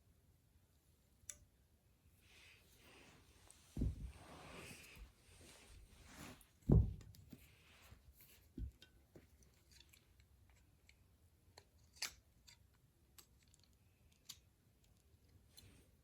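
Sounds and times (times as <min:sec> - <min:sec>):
low thump: 0:03.8 - 0:04.3, 0:06.7 - 0:07.2.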